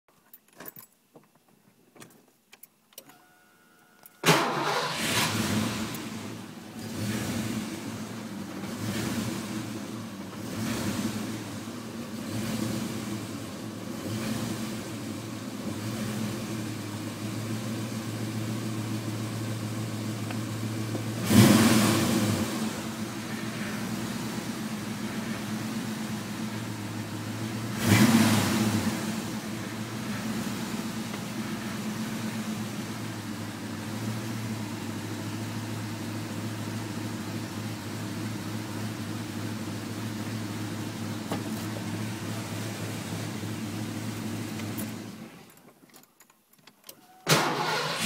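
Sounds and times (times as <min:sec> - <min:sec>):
starter whine: 0:02.9 - 0:15.4, 0:46.9 - 0:48.0.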